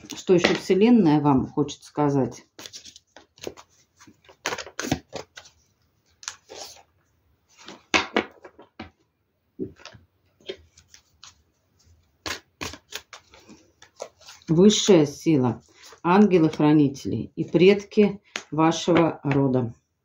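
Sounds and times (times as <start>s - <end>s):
cards being shuffled: 2.6s - 6.9s, 9.8s - 14.6s.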